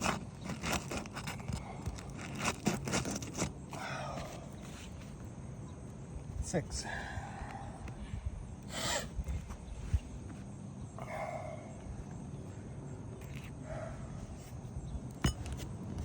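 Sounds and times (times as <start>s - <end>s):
footsteps scuffing on shingle roof: 0.0s - 5.3s.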